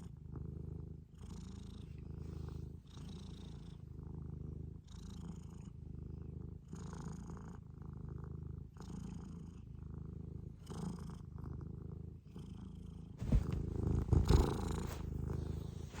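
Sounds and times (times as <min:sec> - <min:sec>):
cat purring: 0:00.0 - 0:16.0
low thumps: 0:13.2 - 0:16.0.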